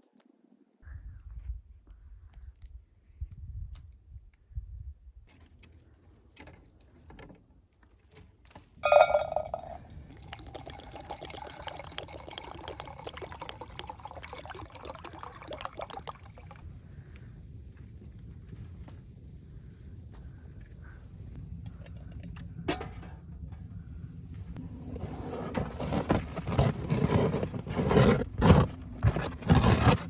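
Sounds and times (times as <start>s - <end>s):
liquid pouring: 8.8s - 16.6s.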